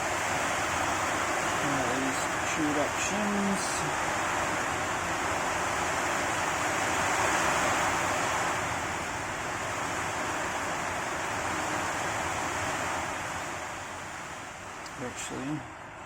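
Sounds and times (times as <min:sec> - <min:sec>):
heavy rain falling: 0:00.0 - 0:16.0.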